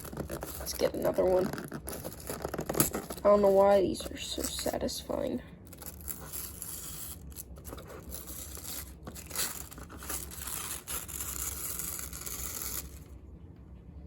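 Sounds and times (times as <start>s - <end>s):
packaging rustling and ripping: 0.0s - 4.6s, 5.6s - 13.1s.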